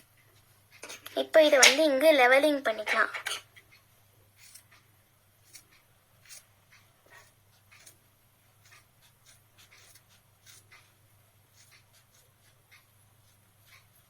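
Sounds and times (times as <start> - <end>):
scissors snipping yarn: 4.4 - 4.8, 5.4 - 8.0, 8.6 - 14.0.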